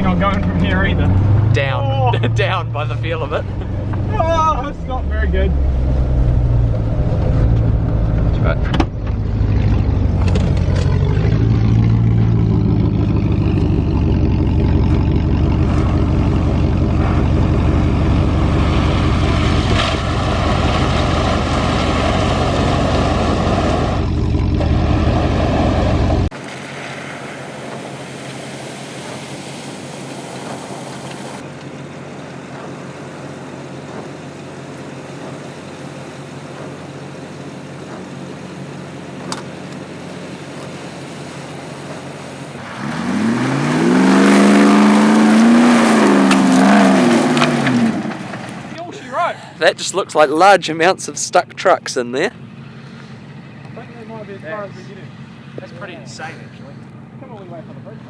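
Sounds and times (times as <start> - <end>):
steady rushing noise: 0.0 - 9.4
off-road vehicle engine under load: 0.0 - 58.0.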